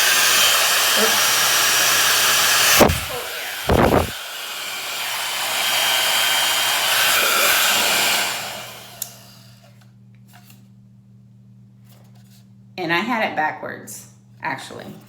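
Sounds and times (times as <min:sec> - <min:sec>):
air blast on microphone: 0:00.0 - 0:04.2
hair dryer blowing: 0:00.0 - 0:09.6
loud knock: 0:02.8 - 0:04.1.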